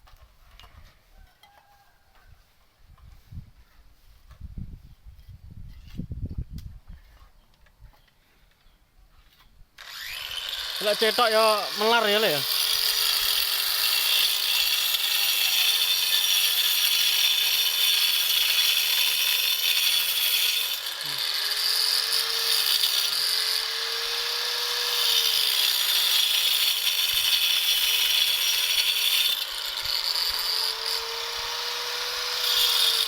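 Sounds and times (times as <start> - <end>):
power cutter cutting: 9.8 - 33.0.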